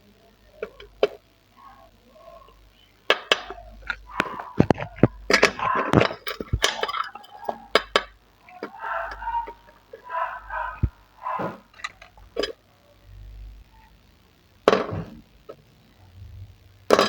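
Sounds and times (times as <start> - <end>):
plastic bricks clattering: 3.1 - 9.2.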